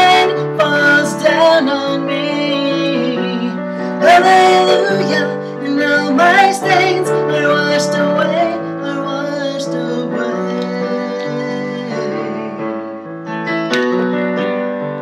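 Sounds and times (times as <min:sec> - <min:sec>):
woman singing worship song: 0:00.0 - 0:09.2
piano chords: 0:00.0 - 0:15.0.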